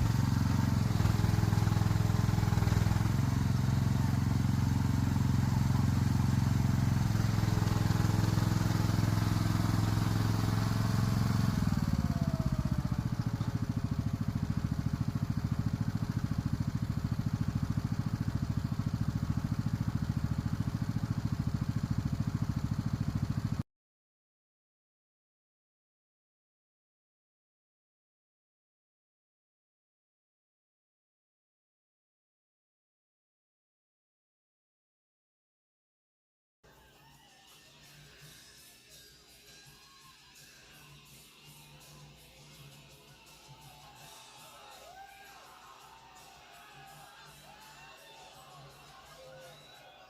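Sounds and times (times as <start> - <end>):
engine running: 0.0 - 23.6.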